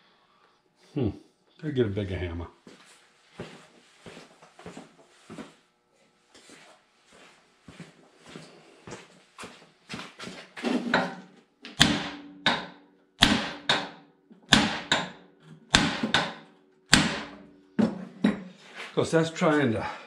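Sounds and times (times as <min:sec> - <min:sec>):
hammer striking metal: 0:11.8 - 0:18.5.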